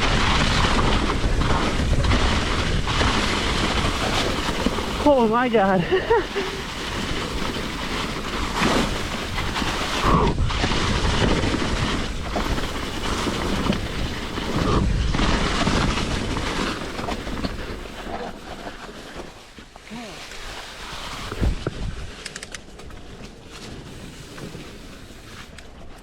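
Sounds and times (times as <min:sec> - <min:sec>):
wind noise on microphone: 0:00.0 - 0:05.1, 0:05.8 - 0:18.1, 0:20.8 - 0:23.0
bike jolts: 0:00.0 - 0:26.0
bike tyres on dirt trail: 0:00.0 - 0:26.0.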